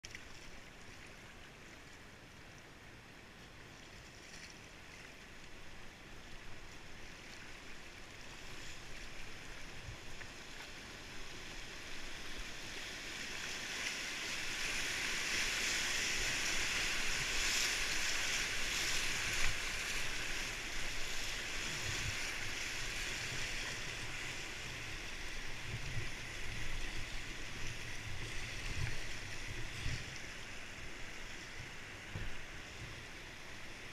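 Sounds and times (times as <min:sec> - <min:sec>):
whitewater rushing: 0:11.1 - 0:33.8.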